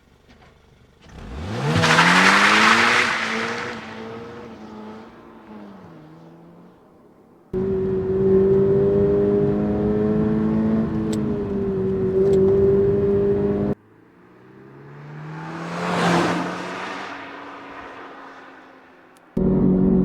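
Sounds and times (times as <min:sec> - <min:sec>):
car engine revving hard: 0:01.1 - 0:06.8, 0:07.5 - 0:18.9
car passing by: 0:01.1 - 0:07.6, 0:11.5 - 0:19.4.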